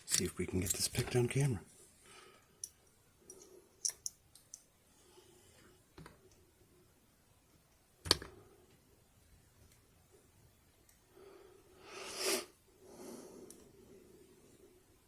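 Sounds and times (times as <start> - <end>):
person breathing: 1.9 - 2.6, 4.9 - 5.8, 11.1 - 14.8.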